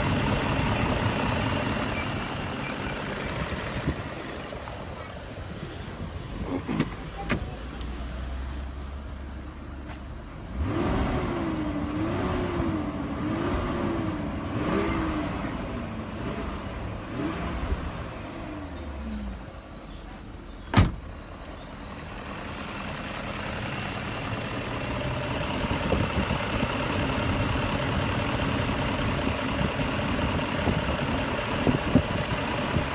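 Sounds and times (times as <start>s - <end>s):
engine running: 0.0s - 32.9s.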